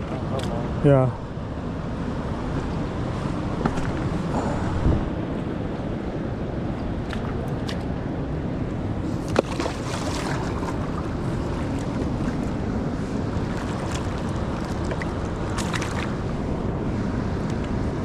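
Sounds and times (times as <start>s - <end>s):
wind buffeting microphone: 0.6s - 18.0s
river water rushing: 7.2s - 18.0s.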